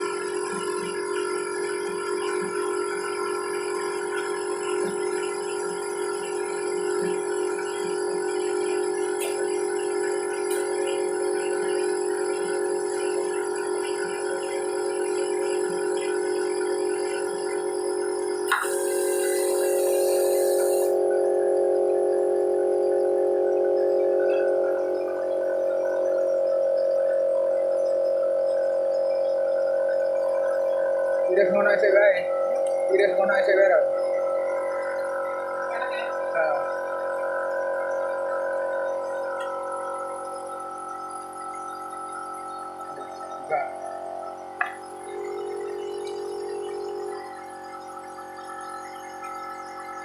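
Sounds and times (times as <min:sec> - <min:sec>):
machine humming: 0:00.0 - 0:27.3
high hiss: 0:18.5 - 0:21.0.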